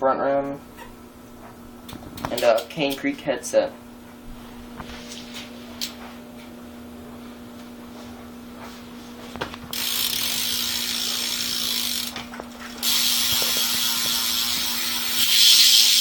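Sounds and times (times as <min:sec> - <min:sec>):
bicycle freewheel ratcheting: 0:09.7 - 0:16.0.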